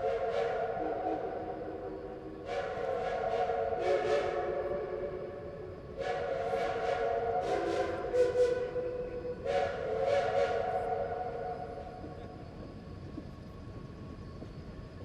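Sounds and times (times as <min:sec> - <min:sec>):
steam locomotive chime whistle: 0:00.0 - 0:12.4.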